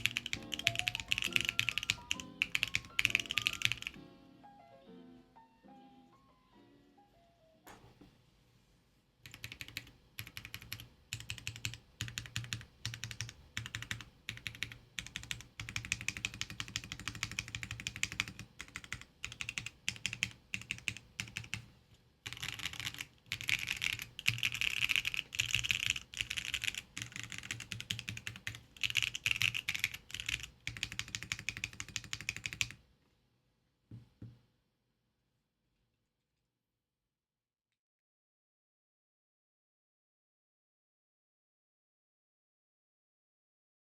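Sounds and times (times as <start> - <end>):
typing on mechanical keyboard: 0.0 - 4.0, 9.3 - 32.8.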